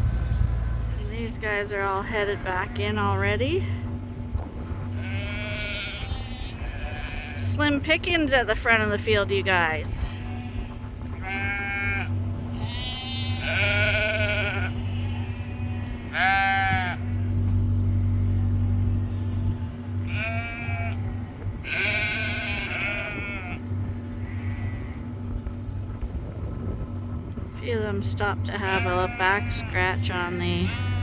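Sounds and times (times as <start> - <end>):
sheep bleating: 1.8 - 3.9, 4.8 - 17.4, 18.1 - 25.4, 28.5 - 31.0.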